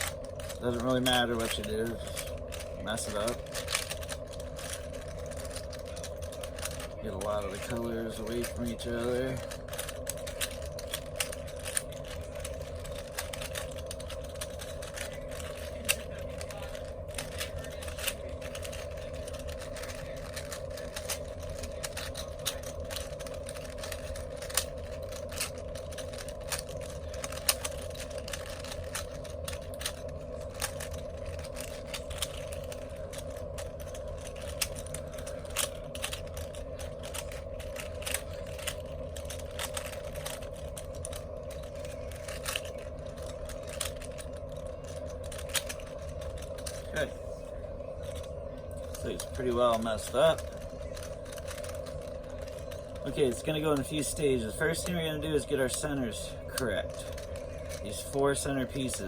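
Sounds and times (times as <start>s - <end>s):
puzzle cube layers clicking: 0.0s - 9.1s, 9.7s - 46.9s
steady background hum: 0.0s - 59.0s.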